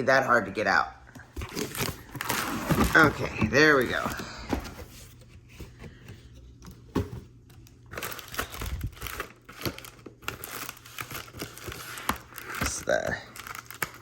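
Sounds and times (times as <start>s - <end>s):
wrapping crinkling and rustling: 1.3s - 5.5s, 7.6s - 14.0s.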